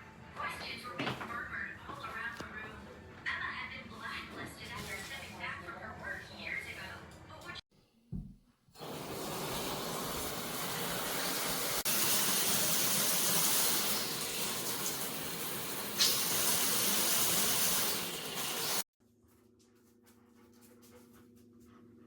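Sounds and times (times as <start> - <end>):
shower water spraying: 8.8 - 18.8.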